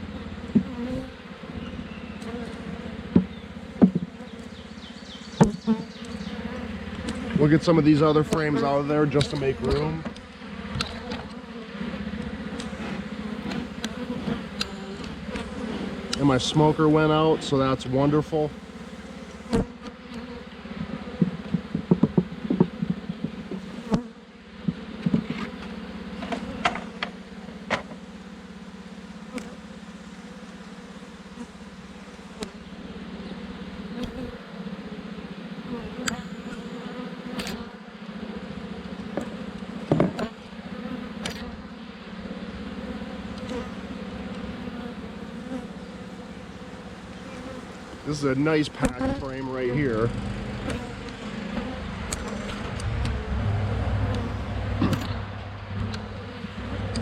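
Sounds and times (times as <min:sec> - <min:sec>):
bees buzzing: 0:00.0 - 0:57.0
wooden hive frames knocking: 0:03.1 - 0:11.2, 0:20.8 - 0:28.0.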